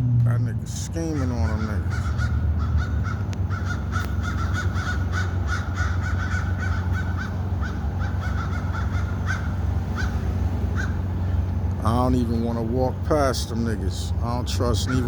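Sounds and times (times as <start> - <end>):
steady low rumble: 0.0 - 15.0
crows cawing: 1.0 - 11.6, 14.8 - 15.0.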